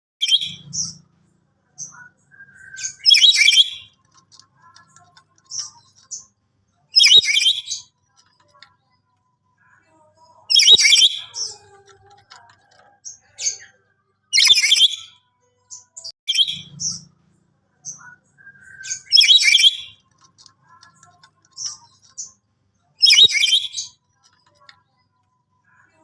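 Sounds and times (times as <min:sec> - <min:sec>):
parrot whistles and chatters: 0:01.8 - 0:06.3, 0:06.9 - 0:08.6, 0:10.5 - 0:15.2, 0:17.8 - 0:22.4, 0:23.0 - 0:24.6.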